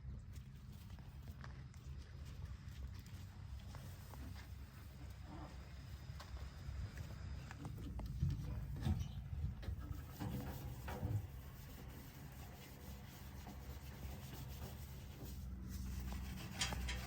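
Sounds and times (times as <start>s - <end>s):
soil scraping: 7.1s - 17.0s.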